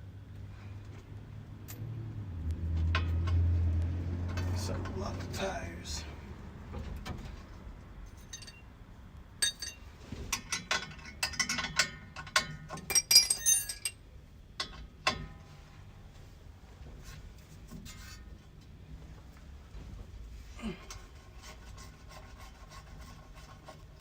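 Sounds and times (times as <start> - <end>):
metal hand tools clinking: 8.1 - 8.6, 9.4 - 9.8, 12.8 - 14.0.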